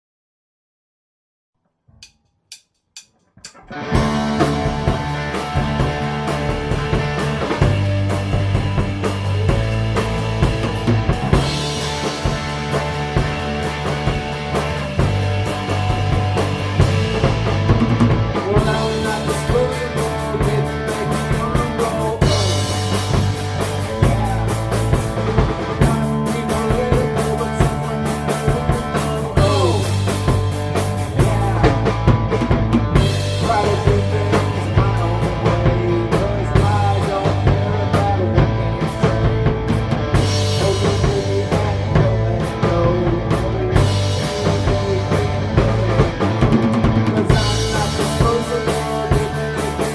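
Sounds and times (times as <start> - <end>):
drum kit beat: 2.0 - 49.9
bass guitar: 3.4 - 49.9
electric guitars: 3.5 - 49.9.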